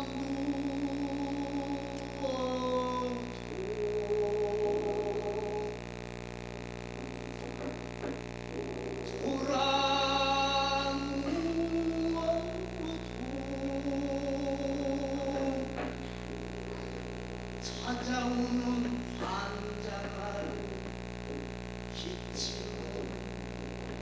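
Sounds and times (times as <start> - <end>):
man singing wordless notes: 0.0 - 5.8, 7.0 - 17.0, 17.6 - 21.0, 21.9 - 23.3
low electrical hum: 0.0 - 24.0.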